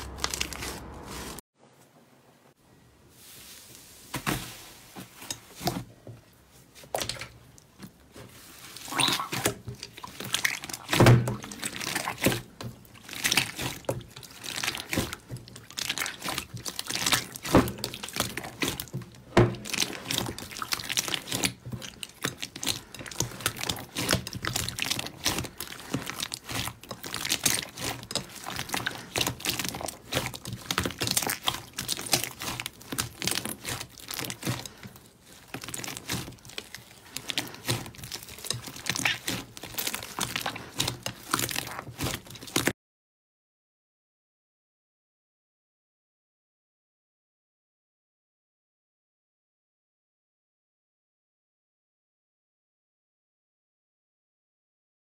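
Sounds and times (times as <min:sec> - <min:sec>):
slime squishing with wet pops: 0:06.8 - 0:42.7.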